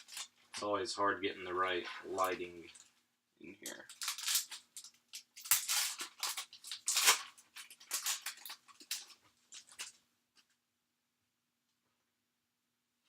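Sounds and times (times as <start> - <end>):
foil pack tearing and crinkling: 0.0 - 0.3, 3.8 - 10.0.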